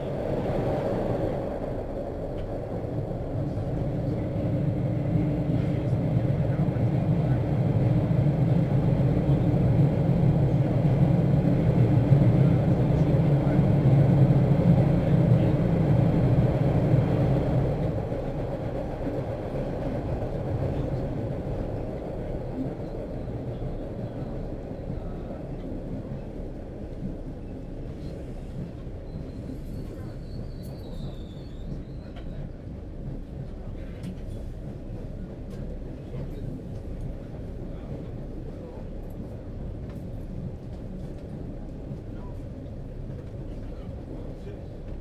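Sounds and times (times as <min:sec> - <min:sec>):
train rumbling and rolling: 0:00.0 - 0:45.0.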